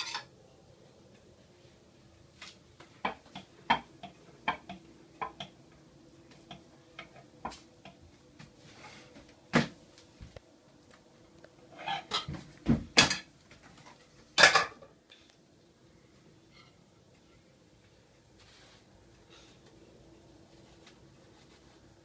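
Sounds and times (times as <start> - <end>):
dishes and cutlery clinking: 0.0 - 0.3, 11.8 - 12.4, 13.9 - 14.9.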